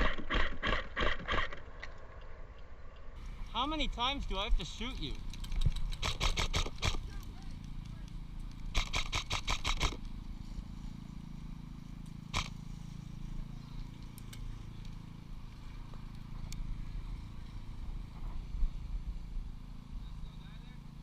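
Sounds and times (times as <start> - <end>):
airsoft gun shots: 0.0 - 1.6, 5.9 - 7.1, 8.7 - 10.0, 12.3 - 12.6.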